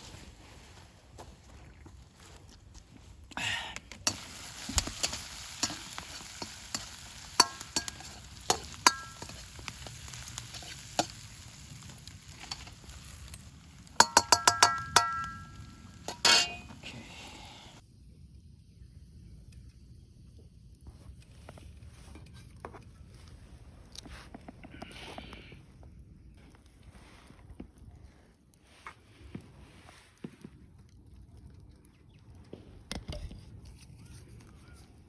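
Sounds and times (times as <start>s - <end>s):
food sizzling in a wok: 4.0s - 17.8s
metal utensil tapping a pan: 4.1s - 9.8s, 14.0s - 16.8s.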